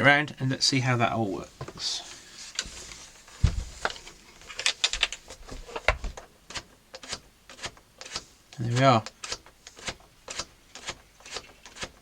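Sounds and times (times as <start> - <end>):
low thumps: 3.4 - 3.9.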